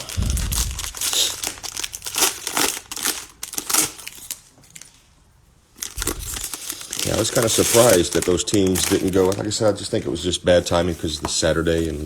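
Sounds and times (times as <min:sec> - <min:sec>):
cellophane crinkling and tearing: 0:00.0 - 0:05.0, 0:05.8 - 0:10.0.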